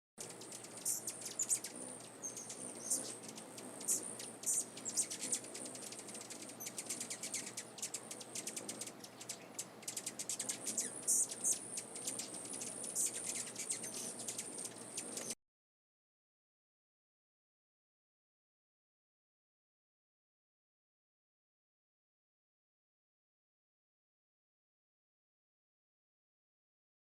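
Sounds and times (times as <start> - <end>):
small birds chirping: 0.2 - 15.4
steady high-pitched buzz: 0.2 - 15.4.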